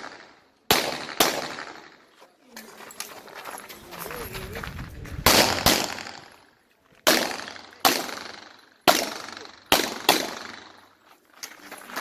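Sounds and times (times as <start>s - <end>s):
pistol shots with ringing echo: 0.0s - 2.0s, 5.2s - 6.4s, 7.0s - 10.9s.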